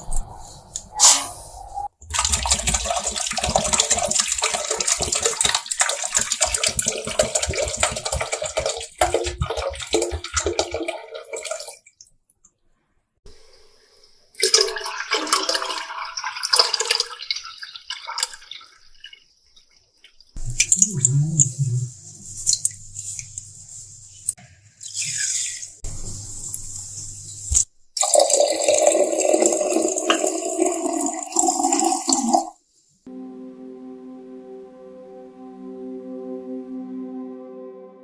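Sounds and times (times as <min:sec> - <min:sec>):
liquid pouring and splashing: 0:02.0 - 0:12.1, 0:14.4 - 0:21.2, 0:26.6 - 0:32.6.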